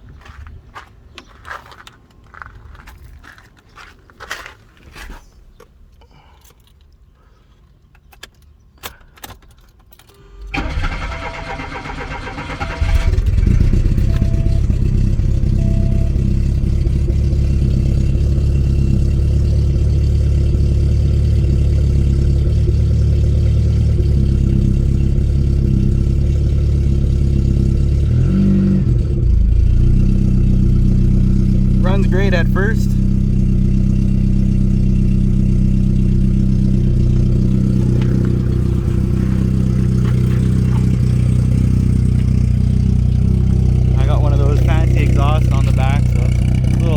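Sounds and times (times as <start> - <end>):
handling clicks and knocks: 7.7 - 10.1, 37.3 - 41.6
car engine starting and idling: 7.8 - 46.9.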